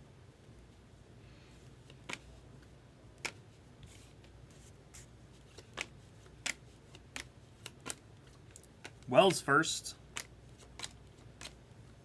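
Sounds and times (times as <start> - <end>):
cards snapping off a stack: 5.6 - 8.0, 10.1 - 11.6.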